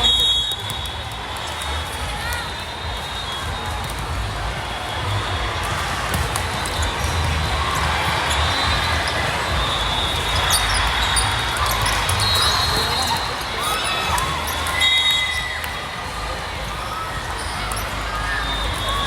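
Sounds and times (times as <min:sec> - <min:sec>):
volleyball being hit and bouncing: 0:00.0 - 0:18.1
murmur of crowd: 0:00.0 - 0:19.0
shoe squeaks: 0:08.1 - 0:16.0.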